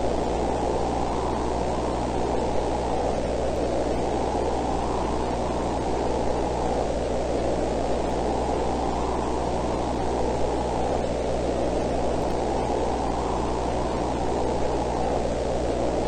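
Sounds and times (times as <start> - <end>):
static hiss: 0.0 - 16.0.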